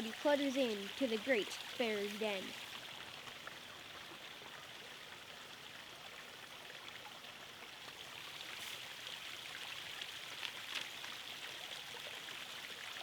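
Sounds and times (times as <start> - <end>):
faint background hiss: 0.0 - 13.0
soft rustle: 8.4 - 9.0.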